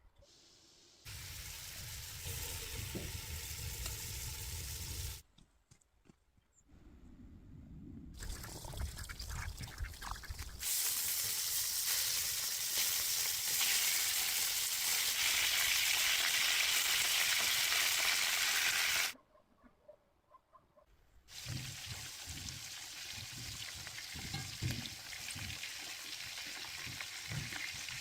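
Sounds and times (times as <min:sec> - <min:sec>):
food sizzling in hot oil: 0:01.0 - 0:05.2, 0:10.6 - 0:19.2, 0:21.3 - 0:28.0.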